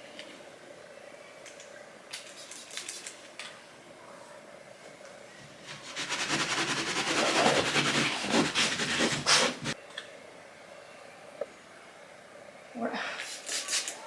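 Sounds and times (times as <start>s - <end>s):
towel scrubbing a wall: 5.6s - 9.8s.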